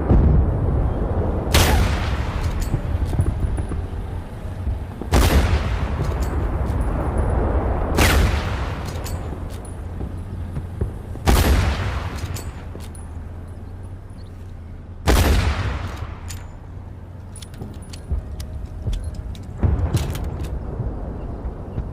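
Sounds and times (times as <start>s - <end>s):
steady low rumble: 0.0s - 21.9s
rifle shots with echo: 1.5s - 3.2s, 5.1s - 6.8s, 7.9s - 9.6s, 11.0s - 12.7s, 15.1s - 16.4s.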